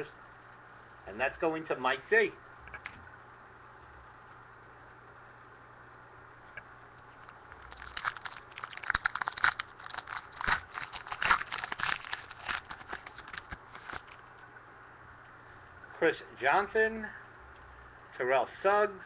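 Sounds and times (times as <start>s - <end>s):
wrapper tearing and crinkling: 7.2s - 14.2s.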